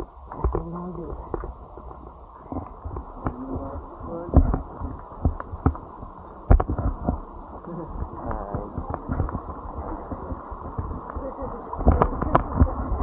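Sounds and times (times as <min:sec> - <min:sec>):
muffled low rumble: 0:00.0 - 0:13.0
knocks and thumps: 0:04.3 - 0:05.8.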